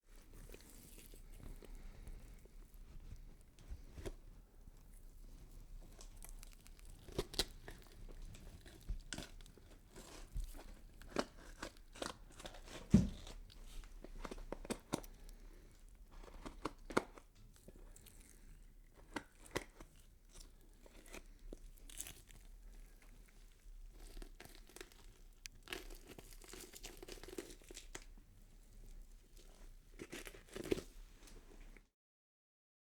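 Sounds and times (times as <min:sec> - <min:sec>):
skin tearing and crackling: 0:05.8 - 0:15.4, 0:16.2 - 0:28.2, 0:30.0 - 0:30.8.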